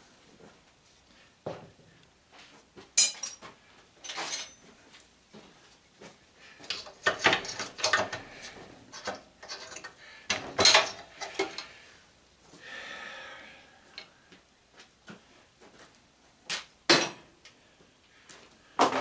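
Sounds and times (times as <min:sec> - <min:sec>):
hand tools clinking on metal: 0:03.0 - 0:04.7, 0:08.9 - 0:11.7.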